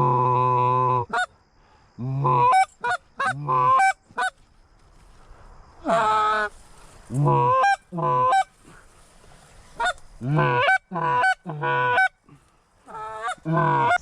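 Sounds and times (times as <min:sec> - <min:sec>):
goose honking: 0:02.2 - 0:04.4, 0:05.8 - 0:06.5, 0:07.1 - 0:08.5, 0:09.8 - 0:12.2, 0:12.9 - 0:14.0.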